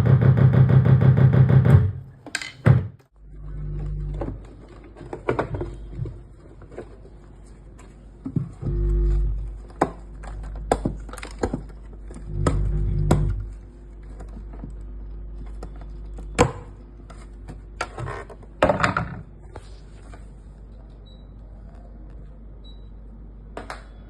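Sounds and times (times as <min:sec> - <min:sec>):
low buzzing hum: 0:08.6 - 0:17.8.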